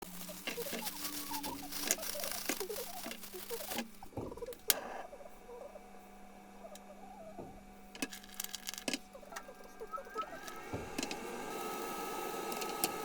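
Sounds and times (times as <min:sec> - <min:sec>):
chirpy squeaks: 0:00.0 - 0:05.9, 0:06.6 - 0:07.6, 0:09.0 - 0:10.7.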